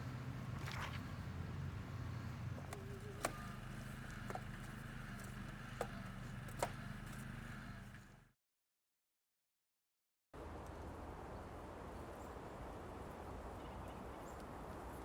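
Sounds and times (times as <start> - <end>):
road noise: 0.0 - 8.3
vehicle engine hum: 0.0 - 8.4
light clicks and knocks: 2.4 - 8.0.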